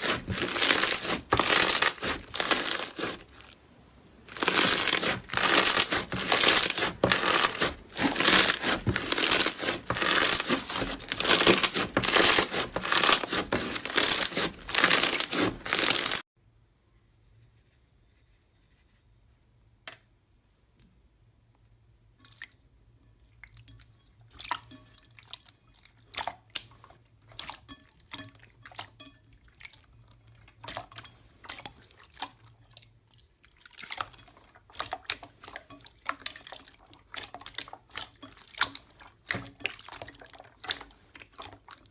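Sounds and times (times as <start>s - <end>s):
slime crunching and crackling: 0.0s - 3.6s, 4.3s - 16.2s.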